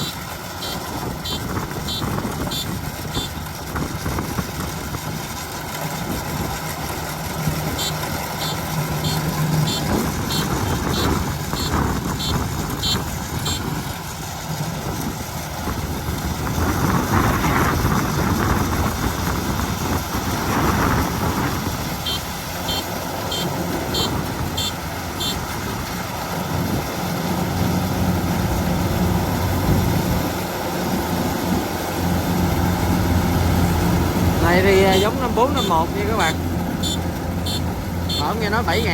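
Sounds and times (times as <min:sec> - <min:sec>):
high electronic alarm beeping: 0:00.0 - 0:03.4, 0:07.8 - 0:13.7, 0:22.0 - 0:25.4, 0:34.9 - 0:38.4
diesel engine running: 0:00.0 - 0:38.9.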